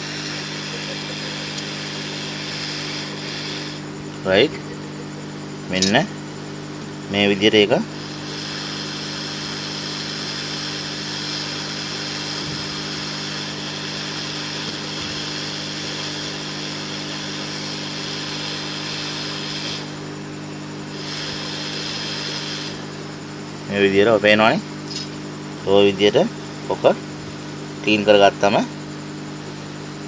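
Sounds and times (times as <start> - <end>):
small motorised tool humming: 0.0 - 5.0, 7.8 - 23.3.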